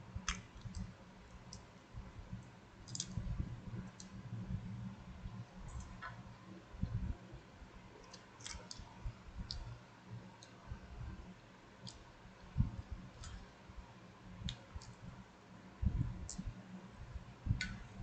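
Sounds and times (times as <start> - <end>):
faint sharp clicks: 17.6 - 17.8.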